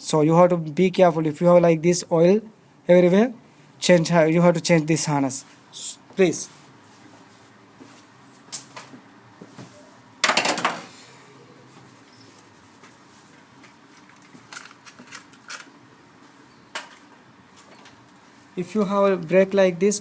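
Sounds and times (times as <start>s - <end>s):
small hard parts clattering: 14.0s - 15.8s.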